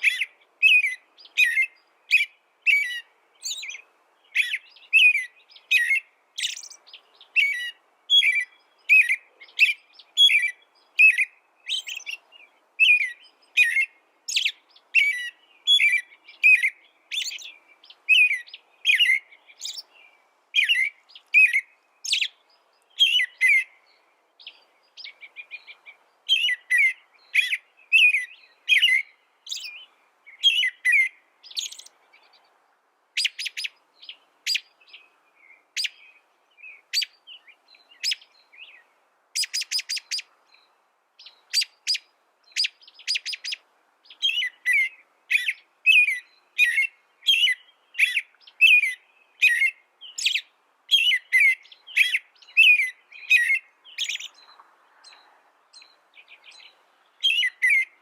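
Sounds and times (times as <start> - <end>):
songbird chirping: 0.0 - 58.0.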